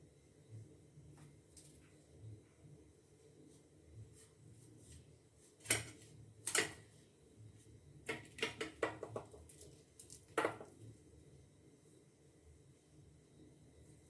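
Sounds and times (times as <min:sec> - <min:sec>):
household objects knocking: 0:08.6 - 0:09.4.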